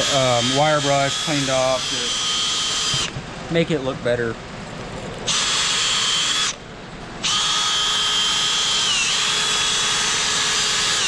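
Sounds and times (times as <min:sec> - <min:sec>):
power wire brush whining: 0:00.0 - 0:03.2, 0:05.1 - 0:06.6, 0:07.2 - 0:11.0.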